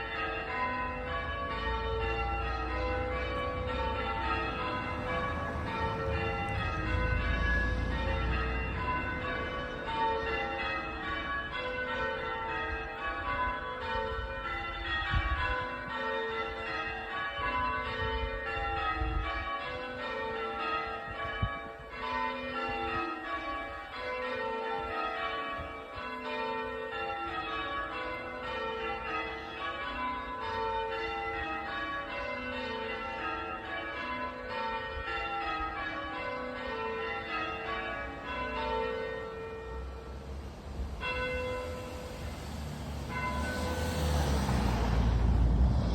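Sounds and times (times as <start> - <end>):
church bells ringing: 0.0 - 45.9.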